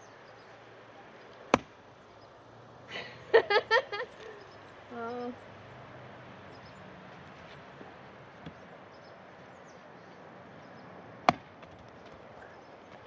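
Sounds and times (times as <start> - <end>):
axe chopping log: 1.5 - 1.8, 11.2 - 12.2.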